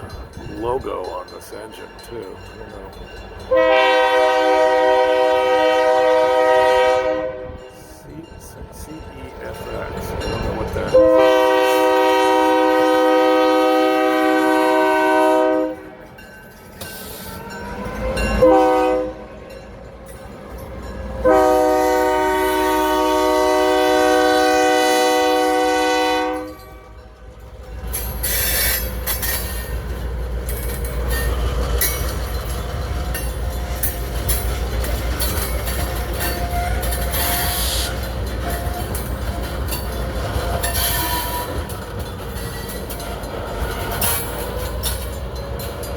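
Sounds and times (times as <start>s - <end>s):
train rumbling and clattering past: 0.0s - 45.9s
locomotive air horn: 3.5s - 7.6s, 10.9s - 16.0s, 18.4s - 19.3s, 21.2s - 27.0s, 36.5s - 38.0s, 40.7s - 41.7s.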